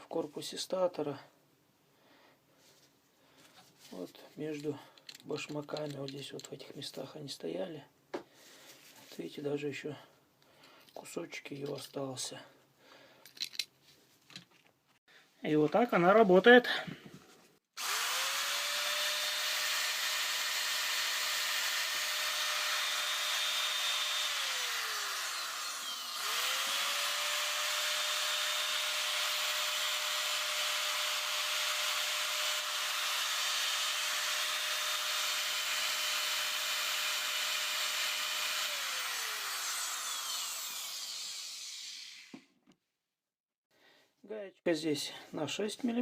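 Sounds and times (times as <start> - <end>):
angle grinder motor whining: 17.8 - 42.4.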